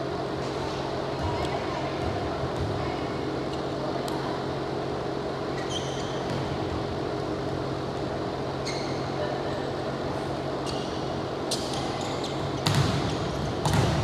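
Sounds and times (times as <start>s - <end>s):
steady room hum: 0.0s - 14.0s
sneaker squeaks: 0.4s - 4.0s, 5.4s - 6.9s, 8.5s - 9.7s, 10.4s - 14.0s
ball thumping on court: 12.6s - 14.0s.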